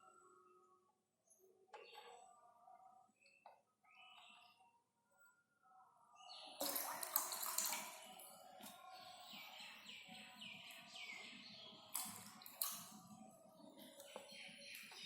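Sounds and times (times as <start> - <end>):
water gurgling in plastic bottle: 6.6 - 8.2.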